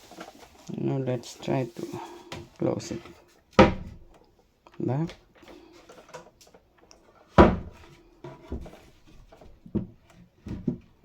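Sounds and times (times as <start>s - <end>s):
cabinet door closing with clack: 3.6s - 4.0s, 7.4s - 7.8s.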